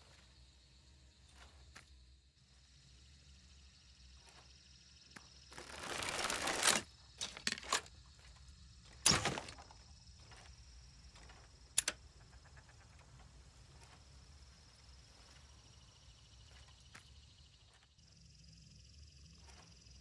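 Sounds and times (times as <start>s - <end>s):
crossbow scraping: 5.5s - 7.8s
quick clicks: 11.1s - 13.2s.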